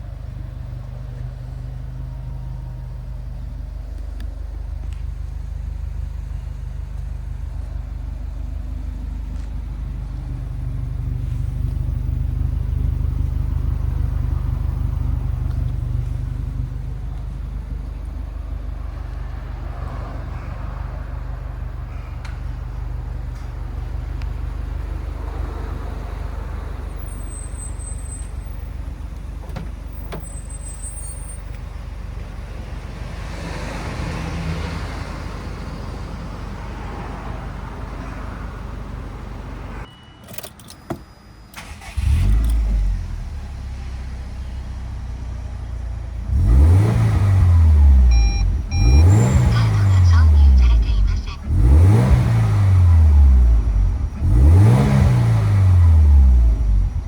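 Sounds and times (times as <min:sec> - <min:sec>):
car engine idling: 0:00.0 - 0:39.9, 0:41.5 - 0:57.0
engine starting with rev flare: 0:41.5 - 0:43.6, 0:46.3 - 0:57.0.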